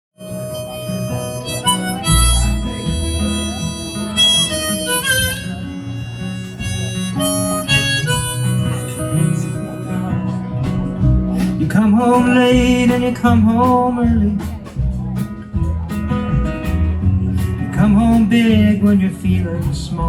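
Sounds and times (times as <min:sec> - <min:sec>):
harmonica: 0:00.2 - 0:11.6
bass notes: 0:00.2 - 0:20.0
country-folk band backing: 0:00.2 - 0:20.0.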